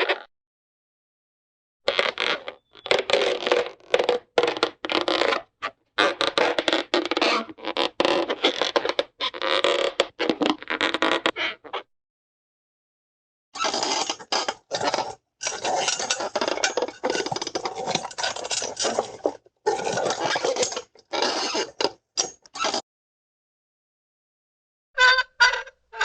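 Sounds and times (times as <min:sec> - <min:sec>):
clattering and clinking: 0:15.4 - 0:19.3.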